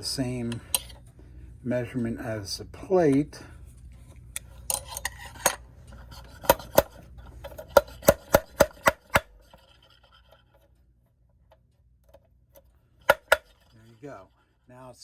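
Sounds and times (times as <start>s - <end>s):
metallic clicks of clock tool: 13.1s - 13.7s
ringing metal taps: 13.1s - 14.0s.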